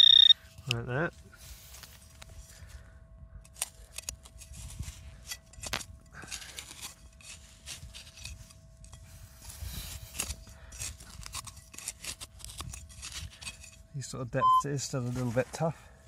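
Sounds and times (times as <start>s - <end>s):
faint steady tone: 0.0s - 0.6s, 14.3s - 14.8s
tool scraping into soil: 3.6s - 13.8s.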